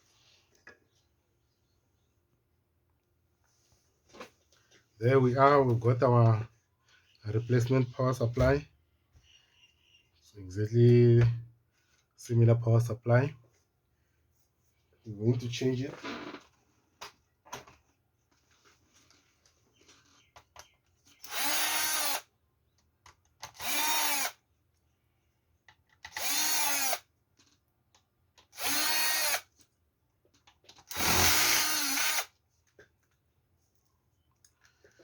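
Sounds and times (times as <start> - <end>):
electric screwdriver whirring: 21.2 - 22.2, 23.5 - 24.4, 26.1 - 27.0, 28.6 - 29.4, 30.9 - 32.3.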